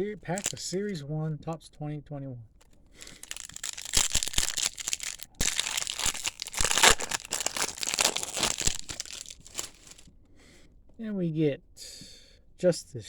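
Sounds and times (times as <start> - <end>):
card wrapper crinkling: 0.3 - 0.7, 3.0 - 10.0.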